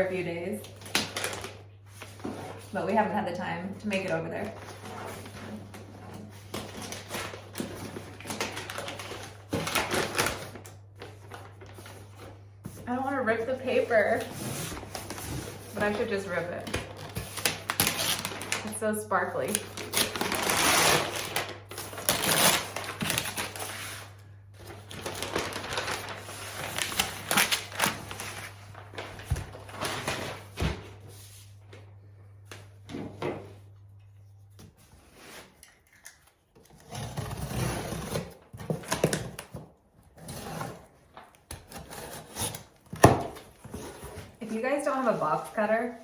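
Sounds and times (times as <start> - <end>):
wrapping paper crinkling and tearing: 0.6 - 2.8, 4.0 - 12.3, 13.4 - 30.6.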